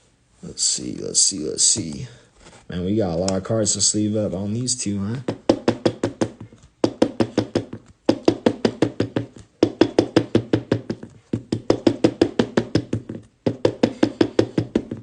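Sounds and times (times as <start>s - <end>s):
rapid light knocking: 5.2s - 15.0s.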